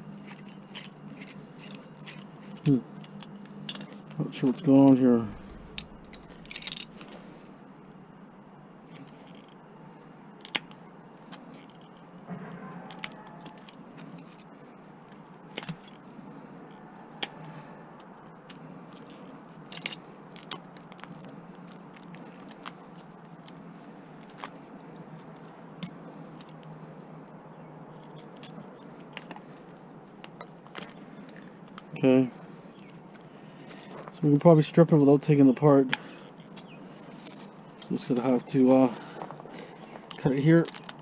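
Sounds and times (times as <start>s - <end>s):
faint steady hum: 0.0s - 41.0s
hand tools clicking and scraping: 0.2s - 7.3s, 17.2s - 26.8s, 28.0s - 34.2s, 35.9s - 41.0s.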